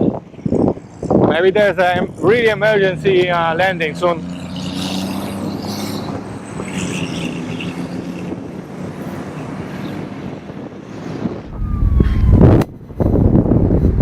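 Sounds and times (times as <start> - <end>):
vehicle engine hum: 0.0 - 14.0
loud low rumble: 11.5 - 14.0.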